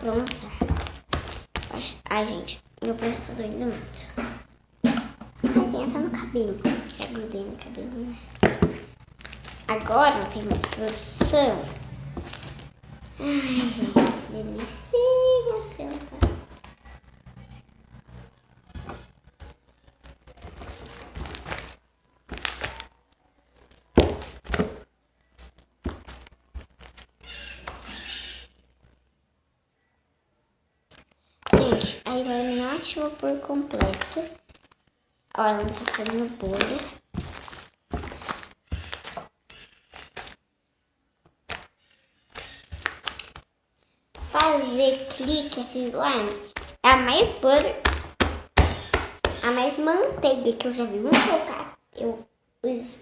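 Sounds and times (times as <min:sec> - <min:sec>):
slime squishing and tearing: 0:00.0 - 0:02.0, 0:06.9 - 0:13.2, 0:18.0 - 0:24.8, 0:30.9 - 0:40.4, 0:41.4 - 0:43.5.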